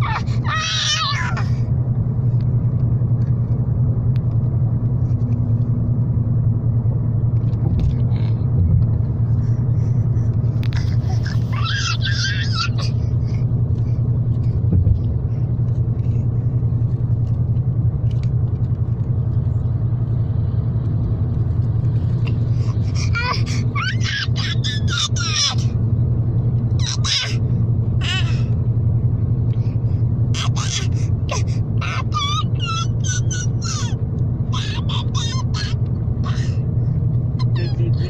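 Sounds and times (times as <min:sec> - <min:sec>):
baby babbling cries: 0:00.0 - 0:01.6, 0:10.7 - 0:13.1, 0:22.6 - 0:25.8, 0:26.8 - 0:27.4, 0:28.0 - 0:28.5, 0:30.4 - 0:36.6
car road and engine rumble: 0:00.0 - 0:38.0.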